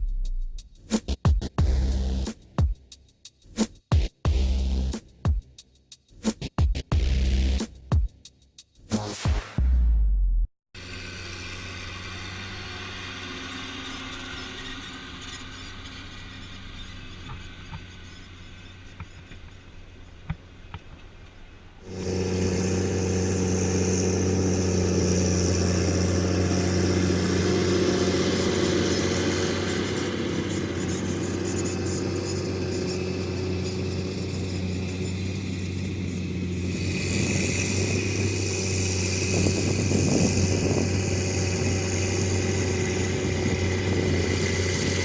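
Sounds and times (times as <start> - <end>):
tractor diesel engine running: 10.8 - 45.0.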